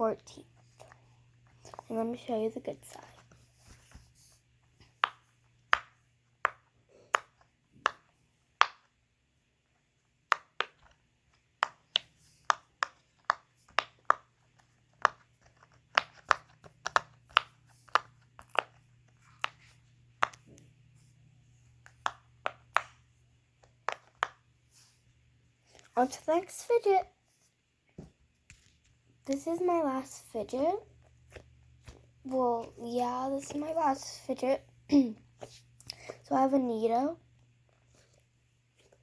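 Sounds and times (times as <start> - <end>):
silicone fidget toy popping: 4.9 - 9.0, 10.2 - 19.6.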